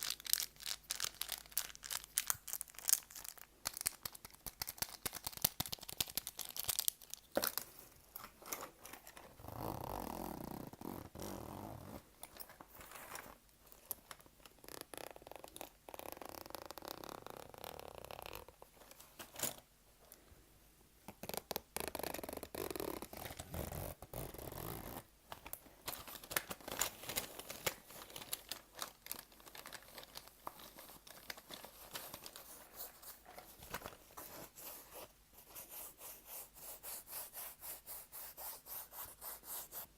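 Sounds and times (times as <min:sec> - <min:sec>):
crackling and crinkling clicks: 0:00.0 - 0:09.4, 0:25.3 - 0:34.3.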